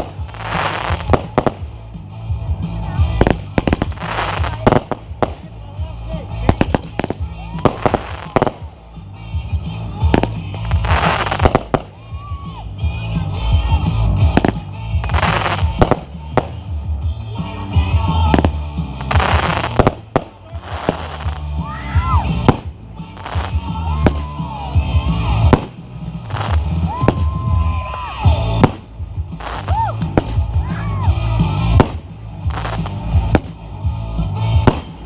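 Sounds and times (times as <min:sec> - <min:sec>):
fireworks bangs and cracks: 0:00.0 - 0:01.9, 0:03.1 - 0:05.7, 0:06.3 - 0:08.8, 0:10.0 - 0:12.1, 0:14.1 - 0:16.8, 0:17.8 - 0:21.6, 0:22.3 - 0:30.6, 0:31.4 - 0:33.8, 0:34.4 - 0:35.0
music playing: 0:00.0 - 0:35.0.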